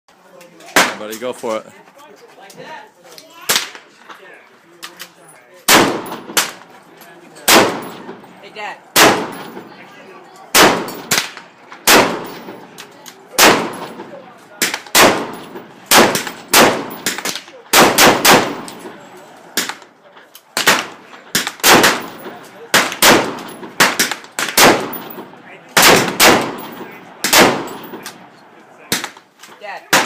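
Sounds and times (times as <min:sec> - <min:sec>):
rifle shots with echo: 0:05.7 - 0:06.8, 0:07.4 - 0:09.8, 0:10.5 - 0:19.9, 0:20.5 - 0:29.2.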